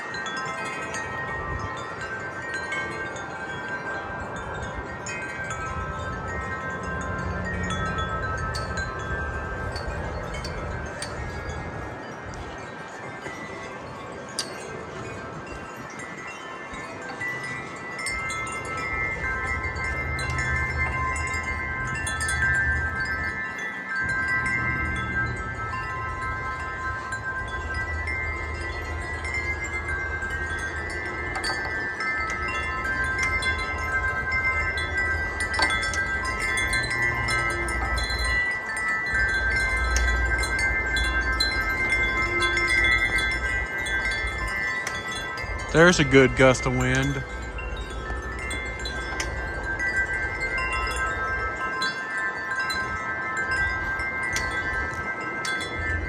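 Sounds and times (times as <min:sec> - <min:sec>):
metal wind chimes ringing: 0:00.0 - 0:56.0
wind rumble on microphone: 0:00.0 - 0:56.0.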